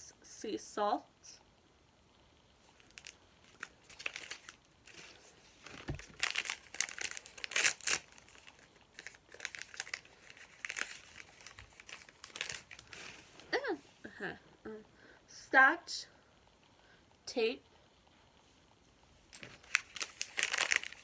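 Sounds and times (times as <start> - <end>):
plastic wrapping crinkling and tearing: 2.7 - 13.2, 19.4 - 21.0.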